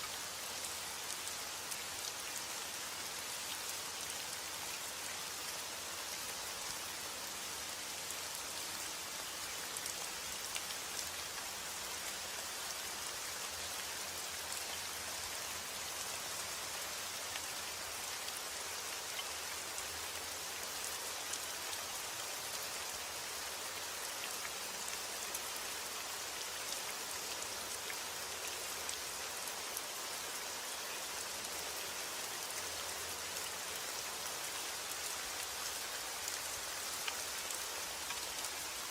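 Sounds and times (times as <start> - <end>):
steady rain: 0.0 - 38.9
raindrops ticking on a surface: 31.2 - 38.9.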